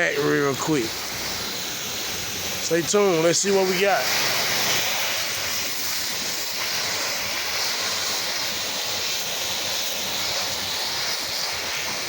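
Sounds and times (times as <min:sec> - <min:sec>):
pressure washer spraying: 0:00.0 - 0:12.0.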